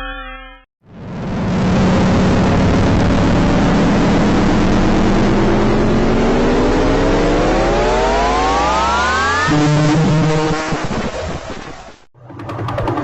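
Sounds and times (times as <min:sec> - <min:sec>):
dense rushing roar: 0:00.8 - 0:13.0
rising pitched tone: 0:00.9 - 0:13.0.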